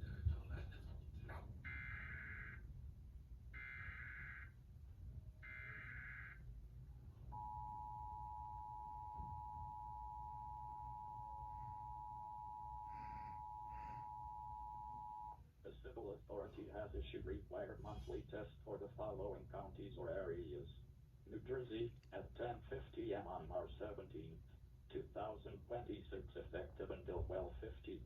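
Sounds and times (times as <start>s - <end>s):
two-tone attention signal: 7.3s - 15.4s.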